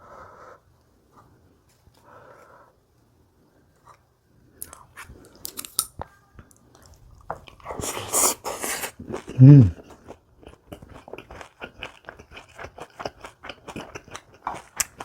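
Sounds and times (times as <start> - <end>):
crunching and chewing: 6.6 - 15.0.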